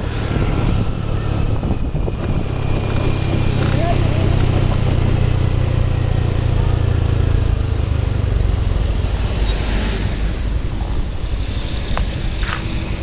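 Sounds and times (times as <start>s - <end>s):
vehicle engine running: 0.0s - 9.5s
road and wind noise: 0.0s - 13.0s.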